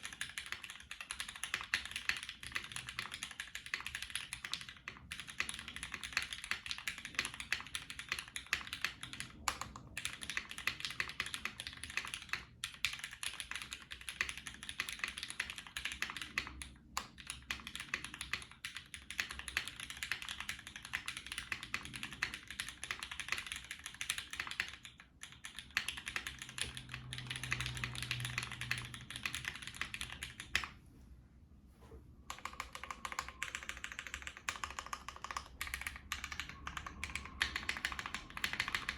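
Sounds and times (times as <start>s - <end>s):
mechanical keyboard typing: 0.0s - 30.8s, 32.3s - 38.9s.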